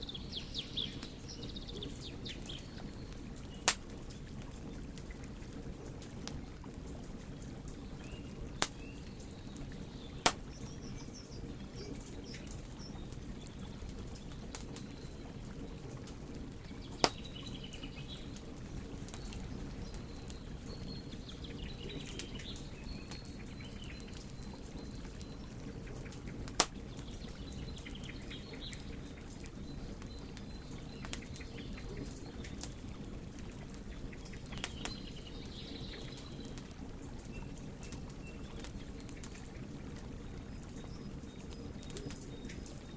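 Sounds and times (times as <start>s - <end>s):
wood fire rumble and crackles: 0.0s - 42.9s
loud sharp pops: 10.2s - 10.5s.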